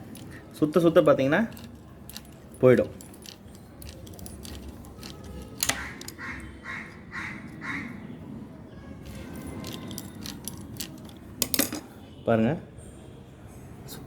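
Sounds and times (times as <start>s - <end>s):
typewriter metal clicks: 3.1s - 6.2s
typewriter spring squeaks: 4.0s - 6.2s.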